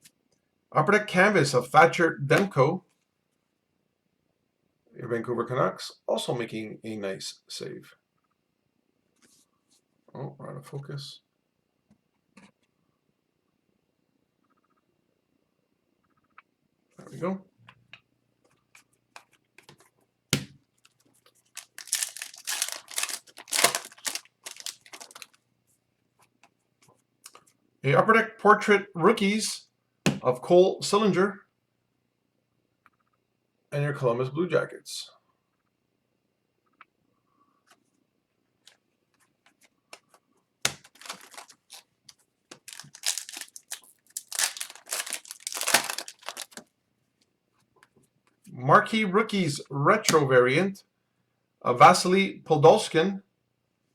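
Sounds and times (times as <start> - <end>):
wrapper tearing and crinkling: 21.4 - 25.4, 40.7 - 41.9, 42.5 - 46.6.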